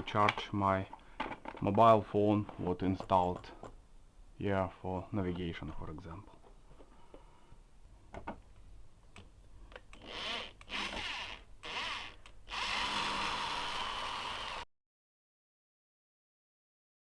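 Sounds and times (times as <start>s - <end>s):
power drill motor whirring: 10.0s - 14.7s.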